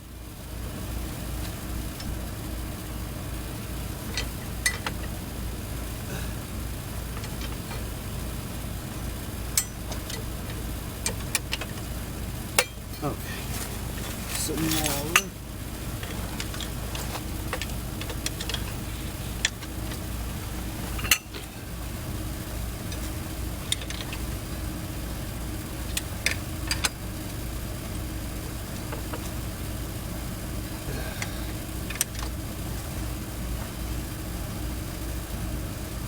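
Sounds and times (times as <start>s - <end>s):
engine idling: 0.0s - 36.0s
metallic clinks and knocks: 7.2s - 8.0s, 9.5s - 11.9s, 12.5s - 21.5s.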